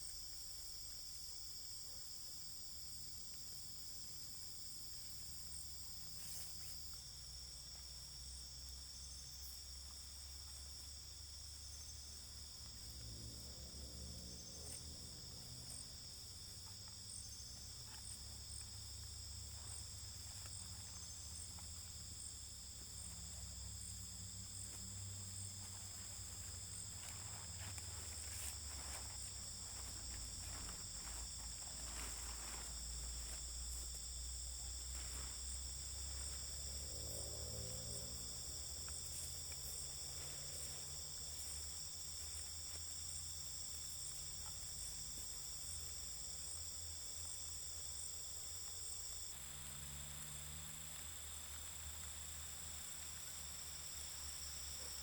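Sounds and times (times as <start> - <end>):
insects trilling: 0.0 - 55.0.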